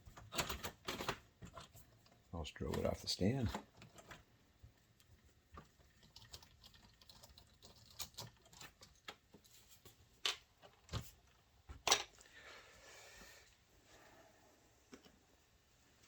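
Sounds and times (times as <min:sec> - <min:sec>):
small parts clicking and tapping: 0:00.1 - 0:12.3.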